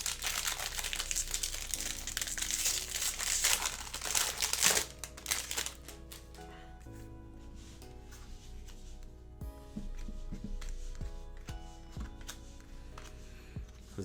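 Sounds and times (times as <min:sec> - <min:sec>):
foil wrapper crinkling: 0:00.0 - 0:06.6
quiet background music: 0:00.0 - 0:14.0.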